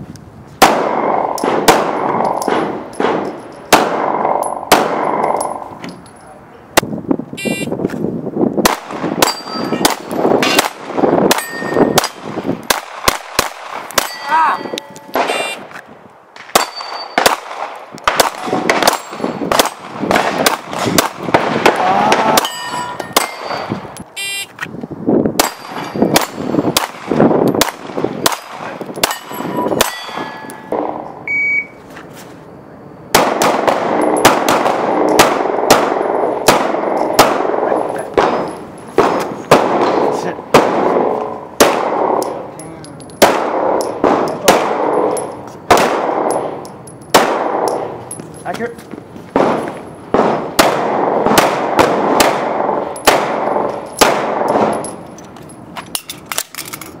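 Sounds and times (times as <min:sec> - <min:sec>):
pistol shots: 0:00.6 - 0:05.6, 0:08.6 - 0:14.2, 0:15.1 - 0:15.7, 0:16.4 - 0:22.5, 0:25.4 - 0:31.0, 0:33.1 - 0:42.5, 0:43.2 - 0:48.0, 0:49.3 - 0:55.0
short beep: 0:07.4 - 0:07.7, 0:14.5 - 0:15.6, 0:24.2 - 0:24.5, 0:31.3 - 0:31.8
steel targets clanging: 0:22.4 - 0:23.8, 0:29.0 - 0:30.8.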